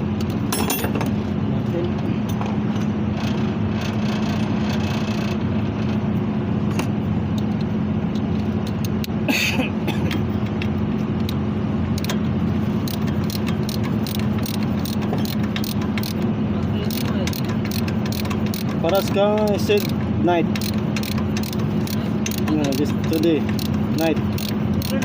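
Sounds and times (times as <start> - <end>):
low machinery hum: 0.0 - 25.0
hand tools clinking on metal: 0.5 - 1.1.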